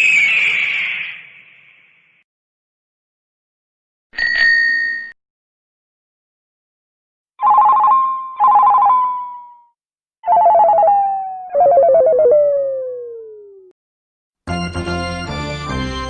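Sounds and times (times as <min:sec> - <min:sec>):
warbling electronic phone rings: 0:07.4 - 0:09.7, 0:10.3 - 0:12.0.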